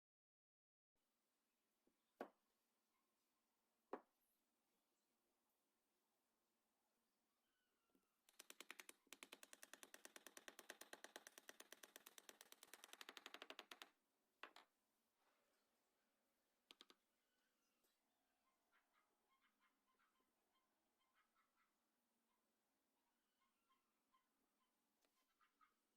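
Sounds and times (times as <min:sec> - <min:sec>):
rapid rattle of sharp clicks: 0:08.3 - 0:14.6.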